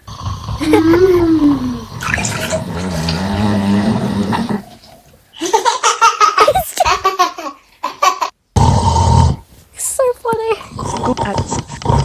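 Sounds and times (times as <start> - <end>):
gurgling snore: 0.0 - 4.9, 10.6 - 12.0.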